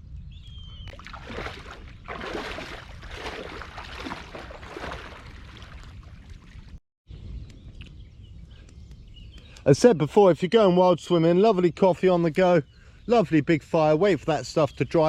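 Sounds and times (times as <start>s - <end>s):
water splashing and sloshing: 0.8s - 6.8s.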